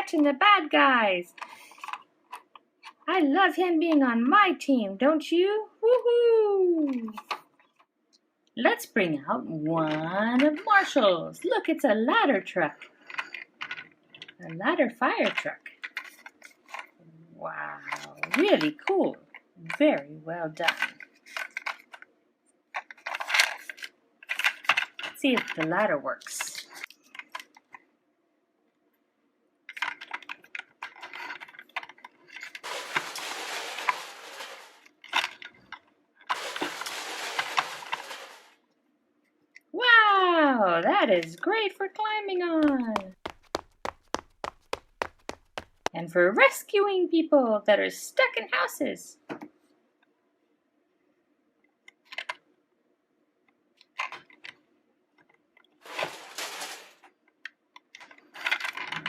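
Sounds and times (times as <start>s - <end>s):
plastic toys clicking and knocking: 1.3s - 3.1s, 6.8s - 7.9s, 12.8s - 14.6s, 15.2s - 17.0s, 17.9s - 20.0s, 20.6s - 22.1s, 22.7s - 27.8s, 29.7s - 38.5s, 51.8s - 52.4s, 53.8s - 54.6s, 55.2s - 59.0s
plastic toy clicks and knocks: 29.7s - 38.4s
crinkly rustling: 29.8s - 35.7s, 36.3s - 38.5s, 55.8s - 57.1s
plastic ladder sliding and rattling: 29.8s - 35.7s, 36.3s - 38.5s, 55.8s - 57.1s.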